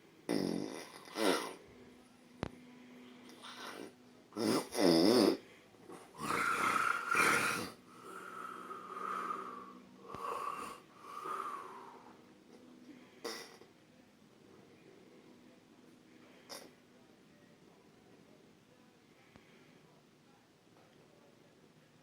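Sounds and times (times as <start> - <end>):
man snoring loudly: 6.2 - 12.0.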